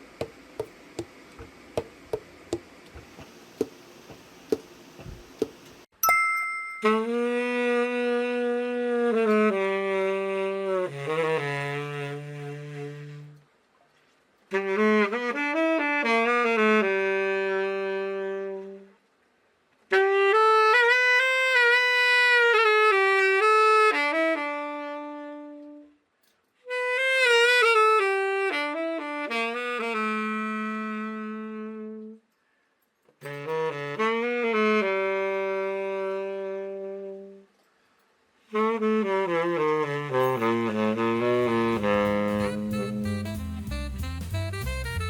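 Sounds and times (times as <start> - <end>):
solo tenor saxophone melody: 6.8 - 13.5, 14.5 - 19.0, 19.9 - 32.3, 33.2 - 37.6, 38.4 - 45.0.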